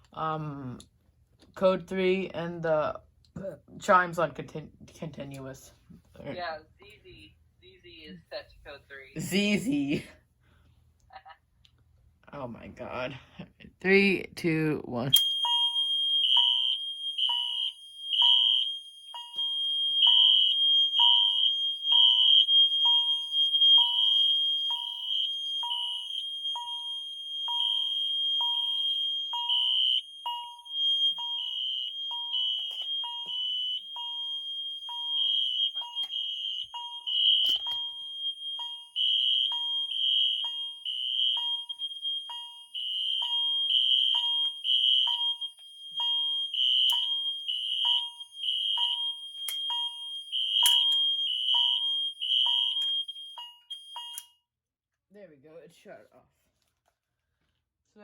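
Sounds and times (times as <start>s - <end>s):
alarm horn pulsing: 15.2s - 45.6s
alarm chime repeating: 15.2s - 54.2s.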